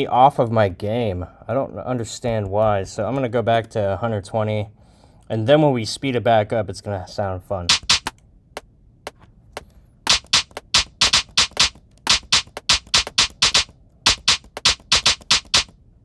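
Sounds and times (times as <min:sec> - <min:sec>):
electronic hi-hat hits: 0:07.7 - 0:08.1, 0:10.1 - 0:15.7.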